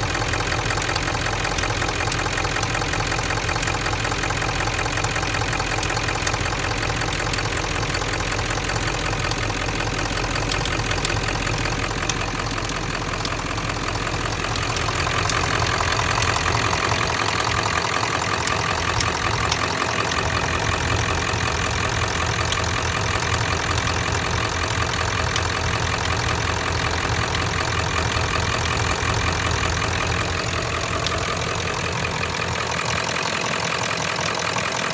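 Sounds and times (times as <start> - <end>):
diesel engine idling: 0.0 - 34.9
metallic ticking: 6.8 - 34.9.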